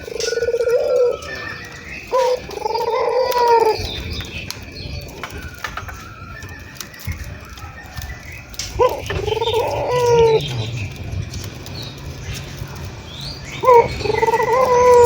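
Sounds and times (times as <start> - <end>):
dove cooing: 0.0 - 4.1, 8.6 - 10.9, 13.6 - 15.0
low rumble: 8.8 - 14.9.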